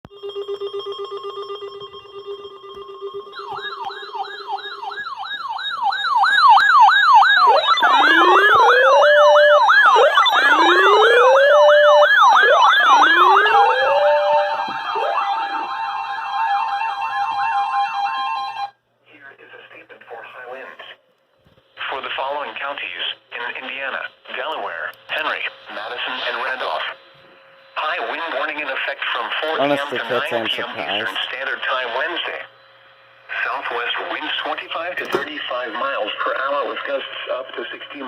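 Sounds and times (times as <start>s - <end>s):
rising siren wails: 0.1s - 18.8s
steady electronic siren tone: 0.1s - 18.8s, 25.2s - 34.9s
fast yelp siren: 0.3s - 18.8s.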